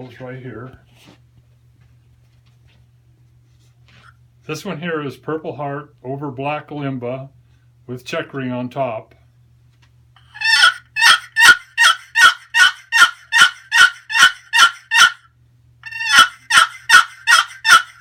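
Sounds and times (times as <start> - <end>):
turkey box call raspy yelps: 10.2 - 18.0.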